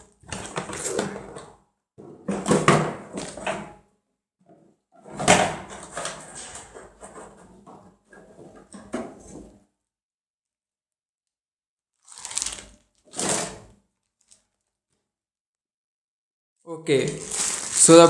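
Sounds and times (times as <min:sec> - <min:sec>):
packaging rustling: 0:17.1 - 0:18.0.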